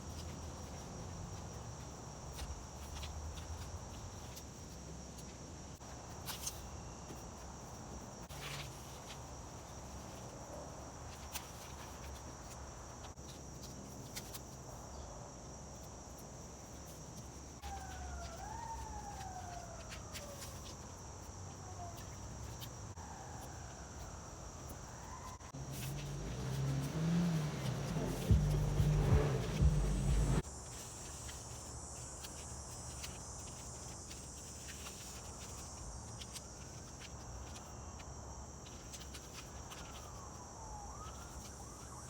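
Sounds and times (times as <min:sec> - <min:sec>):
insects droning: 0:00.0 - 0:42.0
distant siren wailing: 0:17.6 - 0:20.5, 0:24.8 - 0:30.4, 0:40.2 - 0:42.0.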